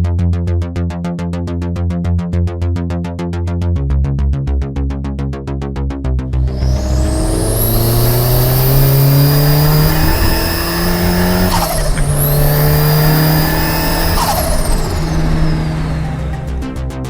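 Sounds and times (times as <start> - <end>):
car engine accelerating hard: 6.3 - 17.0
turbo flutter: 6.3 - 17.0
turbo whistle: 6.4 - 17.0.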